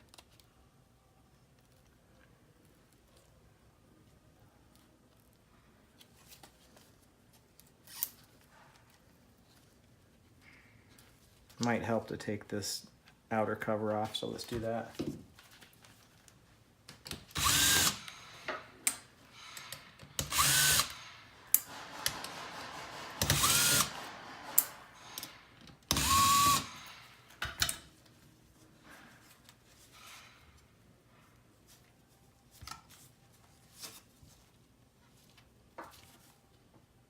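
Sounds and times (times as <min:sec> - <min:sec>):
power screwdriver whirring: 0:17.3 - 0:18.2, 0:20.2 - 0:21.1, 0:21.8 - 0:25.3, 0:25.9 - 0:26.8.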